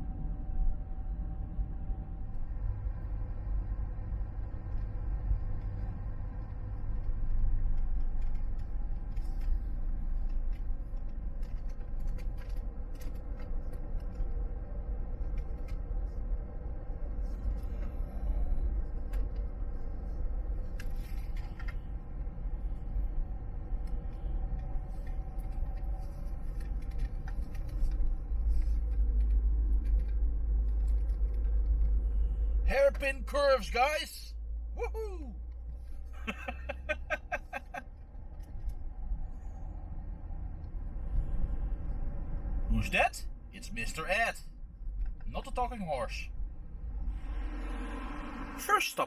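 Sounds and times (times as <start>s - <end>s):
car engine and road rumble: 0.0s - 49.0s
light clicks and rattles: 23.7s - 32.2s.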